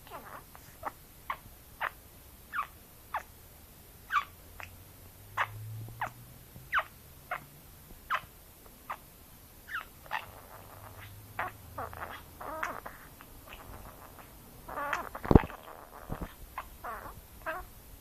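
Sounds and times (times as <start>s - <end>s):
budgerigar chirping: 0.0s - 3.3s, 4.1s - 4.7s, 5.4s - 6.1s, 6.7s - 7.4s, 8.1s - 8.3s, 9.7s - 17.7s
budgerigar warbling chatter: 9.7s - 17.7s.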